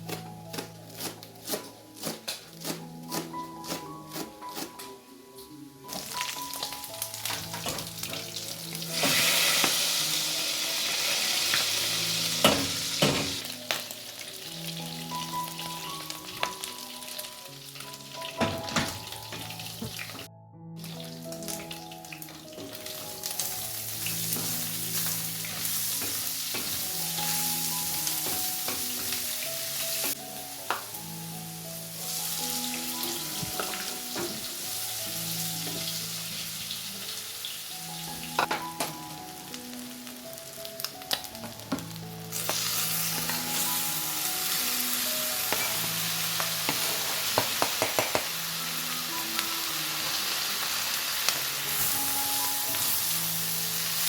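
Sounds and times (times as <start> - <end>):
background music: 0.0 - 54.0
meat sizzling in a pan: 5.9 - 54.0.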